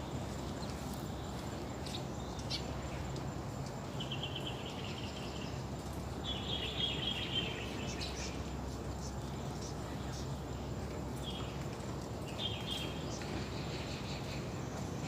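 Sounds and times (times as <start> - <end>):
sparrows chirping: 0.0 - 15.0.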